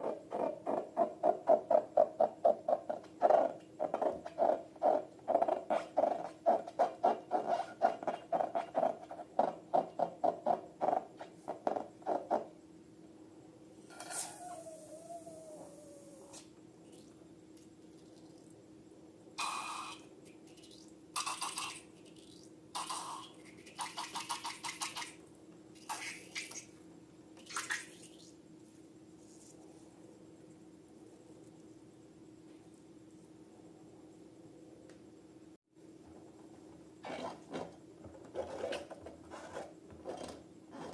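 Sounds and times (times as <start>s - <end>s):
faint steady hum: 0.0s - 40.9s
faint soft hiss: 13.7s - 18.6s
balloons and slime squeezed: 13.9s - 16.5s.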